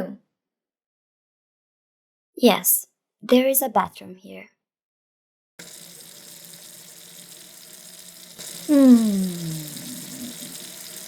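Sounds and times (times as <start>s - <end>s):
tap water running into sink: 5.6s - 11.0s.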